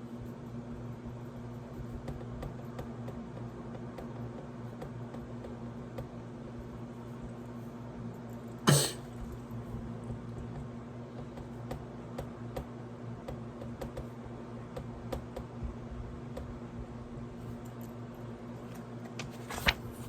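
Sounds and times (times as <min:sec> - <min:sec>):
person coughing: 0:08.7 - 0:09.1.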